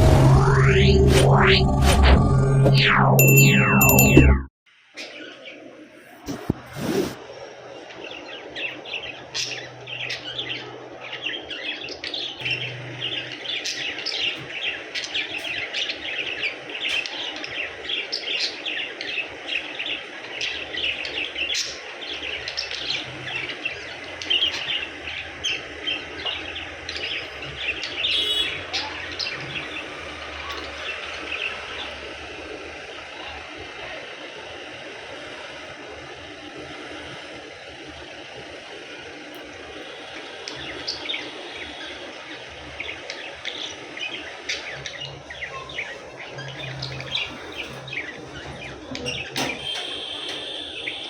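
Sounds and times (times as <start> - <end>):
budgerigars chirping: 8.2 - 32.0, 40.4 - 51.0.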